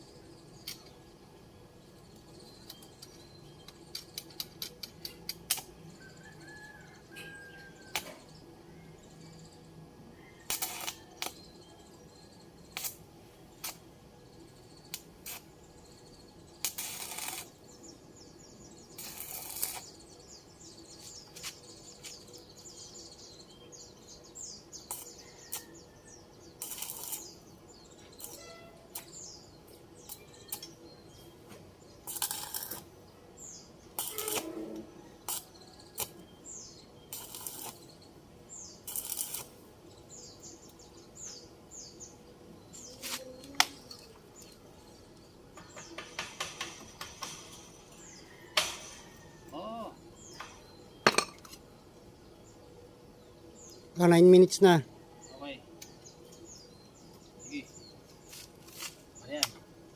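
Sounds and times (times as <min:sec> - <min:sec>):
birds chirping: 0:00.0 - 0:59.9
stick welding crackling: 0:02.1 - 0:05.8, 0:10.4 - 0:11.4, 0:12.7 - 0:13.9, 0:14.8 - 0:15.6, 0:16.6 - 0:17.8, 0:18.8 - 0:20.1, 0:24.8 - 0:25.6, 0:26.5 - 0:29.4, 0:30.0 - 0:30.8, 0:31.9 - 0:41.4, 0:42.7 - 0:49.0
sharp metallic clicks and taps: 0:45.6 - 0:47.5.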